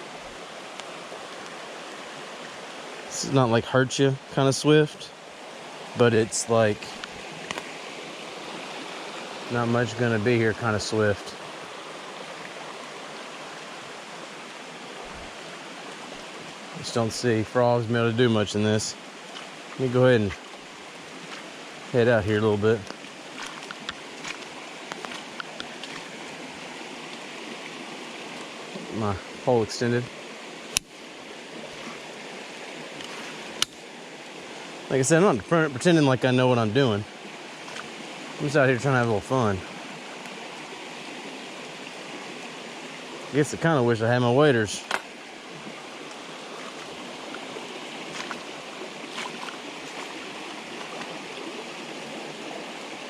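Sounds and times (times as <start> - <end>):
creek water rushing: 0.0 - 53.0
faint clicks: 22.8 - 26.1, 30.7 - 31.0.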